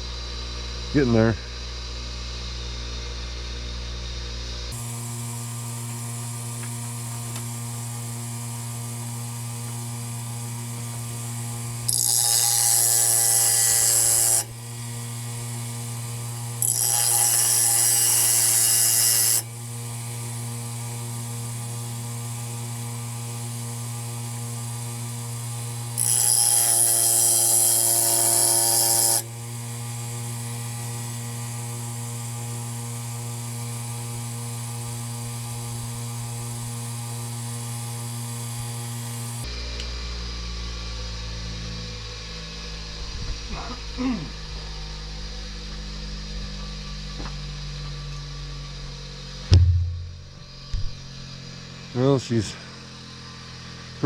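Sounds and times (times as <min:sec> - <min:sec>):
sanding machine motor humming: 0:04.7 - 0:39.5.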